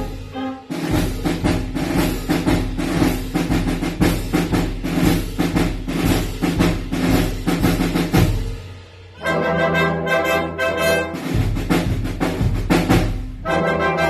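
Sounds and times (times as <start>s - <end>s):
snare and bass drum march rhythm: 0.0s - 14.0s.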